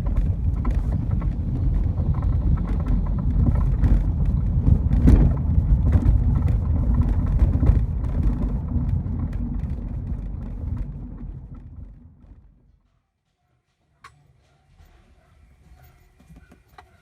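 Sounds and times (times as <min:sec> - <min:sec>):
road rumble in car cabin: 0:00.0 - 0:12.7
knocks and rattles: 0:00.0 - 0:12.9.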